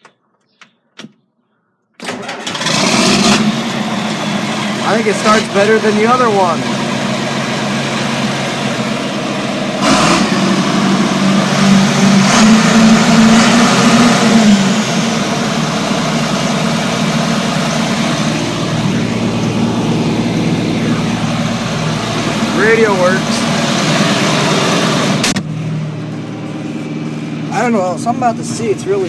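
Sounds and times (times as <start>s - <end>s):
tractor diesel engine idling: 2.1s - 29.0s.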